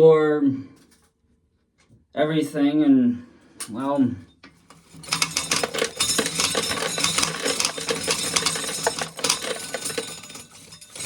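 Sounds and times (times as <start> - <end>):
dry corn kernels rattling: 4.8 - 11.0.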